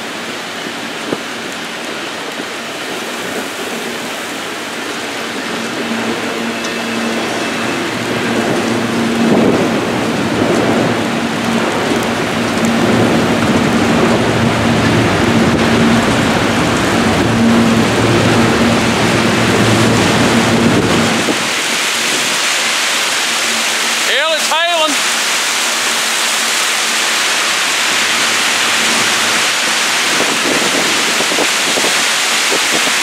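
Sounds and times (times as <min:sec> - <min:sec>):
heavy rain pouring: 0:00.0 - 0:33.0
steady low hum: 0:03.4 - 0:22.2
rolling thunder: 0:04.7 - 0:22.4.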